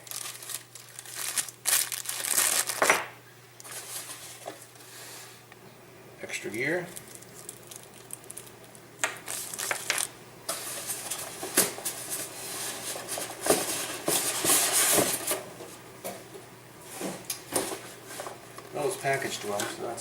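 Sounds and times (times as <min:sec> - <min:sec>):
packaging crinkling and rustling: 0:00.0 - 0:04.8, 0:06.9 - 0:15.4.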